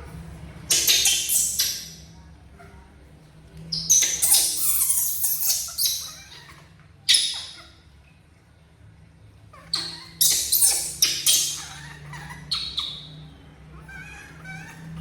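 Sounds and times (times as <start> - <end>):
baby monkey shrieking: 0.7 - 2.1, 3.7 - 7.8, 9.6 - 15.0.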